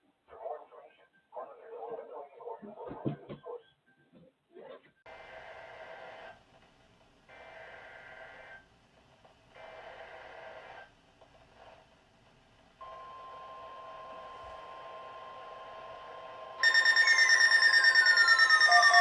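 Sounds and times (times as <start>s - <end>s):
steady warning alarm tone: 16.6s - 19.0s.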